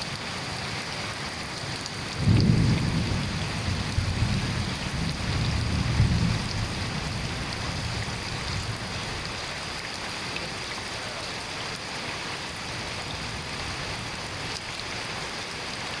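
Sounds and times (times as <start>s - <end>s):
steady rain falling: 0.0s - 16.0s
low rumble of thunder: 2.1s - 9.3s.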